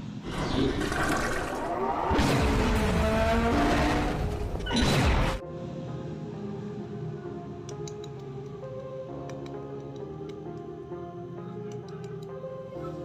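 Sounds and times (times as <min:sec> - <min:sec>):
soft background music: 0:03.0 - 0:13.0.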